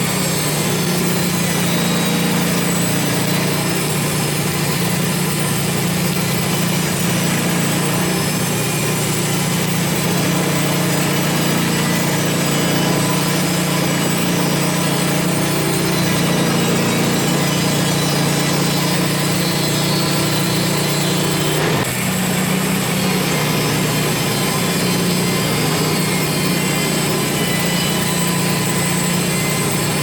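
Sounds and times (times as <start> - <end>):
saw cutting through log: 0.0 - 30.0
sawmill engine running: 0.0 - 30.0.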